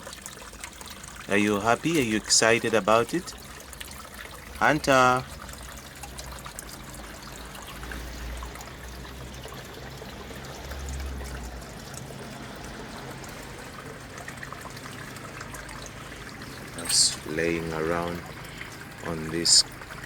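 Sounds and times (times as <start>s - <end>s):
water trickling: 0.0s - 20.0s.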